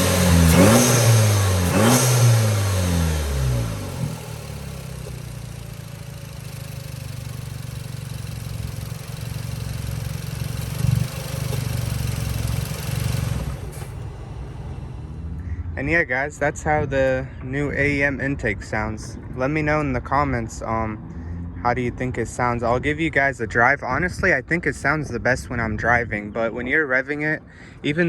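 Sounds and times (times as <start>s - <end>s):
car engine revving and idling: 0.0s - 17.9s.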